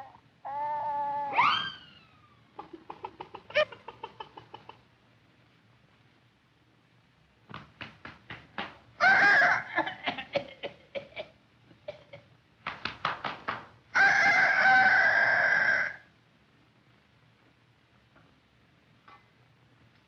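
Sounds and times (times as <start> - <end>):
chicken clucking and cackling: 2.5 - 4.9, 9.0 - 11.1, 14.0 - 16.1
long crowing call: 9.0 - 9.8, 14.0 - 16.1.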